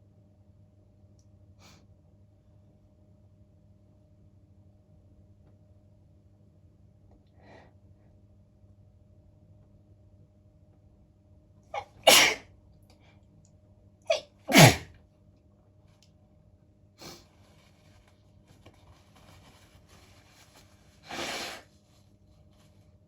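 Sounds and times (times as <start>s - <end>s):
short sniff: 11.8s - 12.4s, 14.1s - 14.8s, 17.0s - 17.3s, 21.0s - 21.7s
woman sneezing: 11.8s - 12.4s, 14.1s - 14.9s
sharp intake of breath: 12.0s - 12.4s, 14.5s - 14.8s, 21.0s - 21.7s
noisy breath out: 21.0s - 21.7s.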